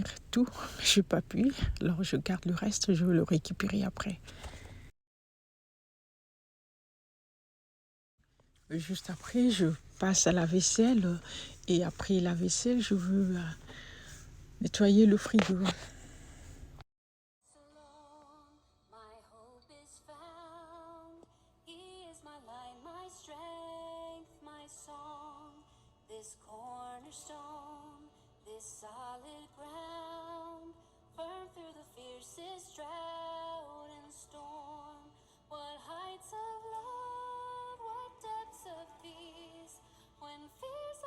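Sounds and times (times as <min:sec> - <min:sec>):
woman singing slow melody: 0:17.5 - 0:41.0.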